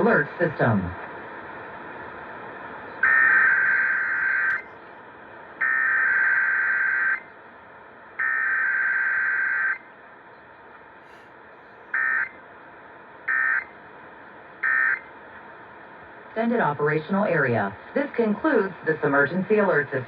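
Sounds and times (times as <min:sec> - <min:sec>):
broadcast hiss: 0:00.0 - 0:20.0
buzzing digital data tones: 0:03.0 - 0:04.6.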